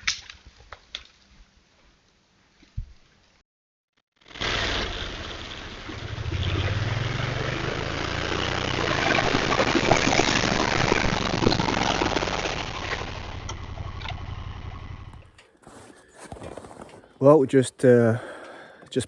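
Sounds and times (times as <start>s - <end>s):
vehicle engine driving: 4.4s - 16.9s.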